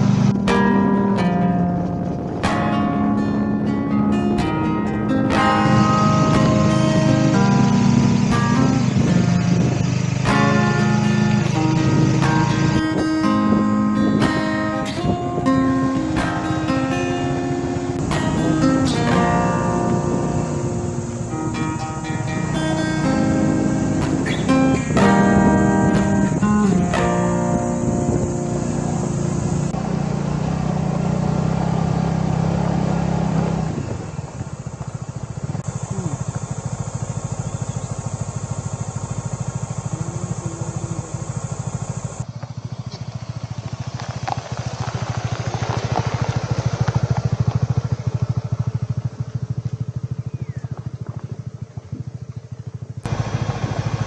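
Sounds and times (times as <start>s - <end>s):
strummed acoustic guitar music: 0.0s - 42.2s
motorcycle engine running: 0.0s - 54.0s.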